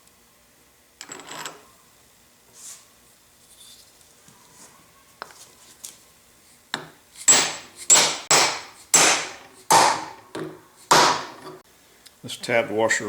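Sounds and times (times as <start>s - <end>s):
hammer striking metal: 7.3s - 11.6s.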